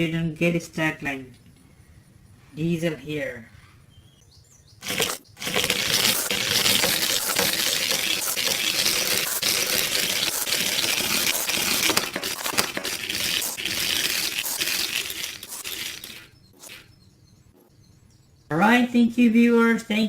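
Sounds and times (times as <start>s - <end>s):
metal toy trains rattling on track: 4.8s - 16.8s.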